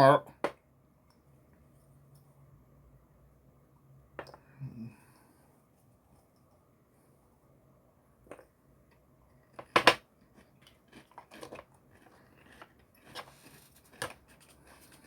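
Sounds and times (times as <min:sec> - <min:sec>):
chewing crunchy snacks: 0:10.3 - 0:15.0.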